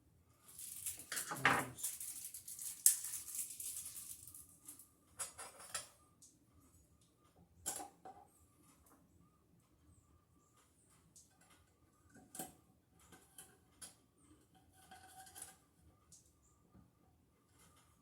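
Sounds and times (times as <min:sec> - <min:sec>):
hardware clinking and scraping: 0:00.5 - 0:04.4.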